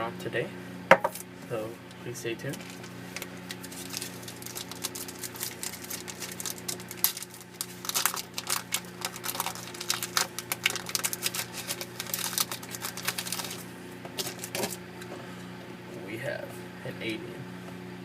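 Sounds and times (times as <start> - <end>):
steady low hum: 0.0 - 18.0
foil wrapper crinkling and tearing: 2.5 - 14.8.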